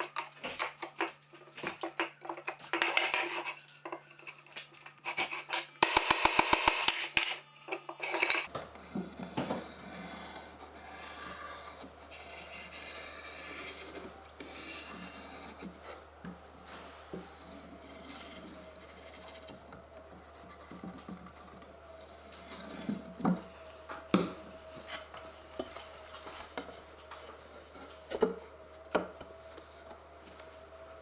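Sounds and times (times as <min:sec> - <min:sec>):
hand tool scraping wood: 0:07.8 - 0:30.6.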